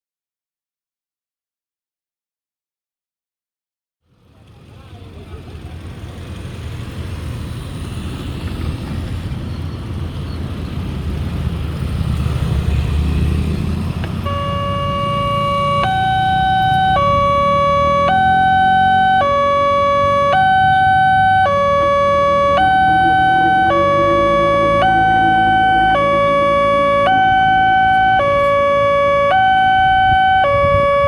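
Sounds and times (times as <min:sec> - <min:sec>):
two-tone crossing warning siren: 0:14.0 - 0:31.0.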